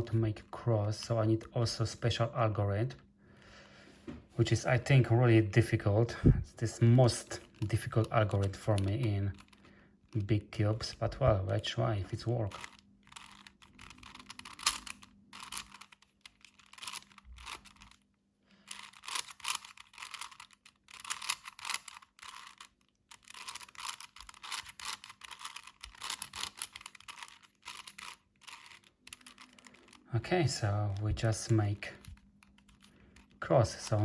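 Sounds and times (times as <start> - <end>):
plastic puzzle cube clicking: 7.4 - 9.7, 12.1 - 18.0, 18.6 - 30.1, 30.9 - 34.0.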